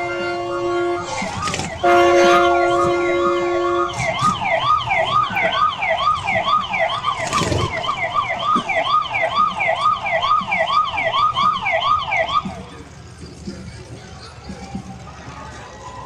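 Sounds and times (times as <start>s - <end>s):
siren yelping: 1.0s - 12.6s.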